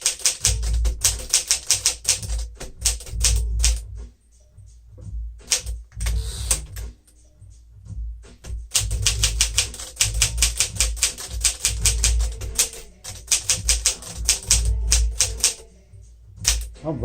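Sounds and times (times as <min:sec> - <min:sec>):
manual typewriter key clacks: 0:00.0 - 0:03.8, 0:05.4 - 0:06.8, 0:08.7 - 0:15.6, 0:16.4 - 0:16.7.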